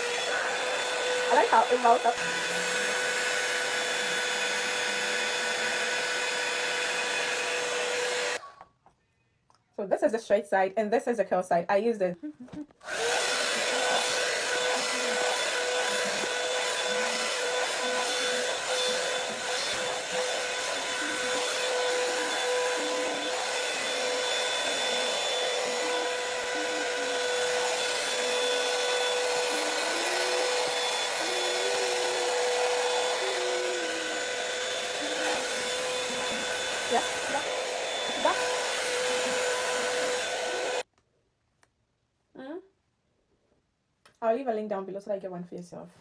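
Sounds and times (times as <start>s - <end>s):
hair styler fan whine: 0.0s - 8.4s, 12.8s - 40.9s.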